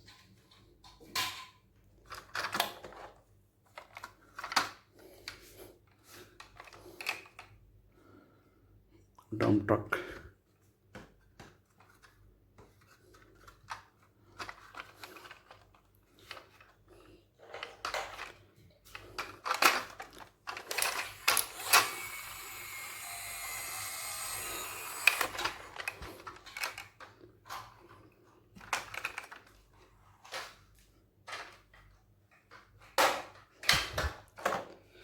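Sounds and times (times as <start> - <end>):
toy cars clattering: 17.4 - 27.7.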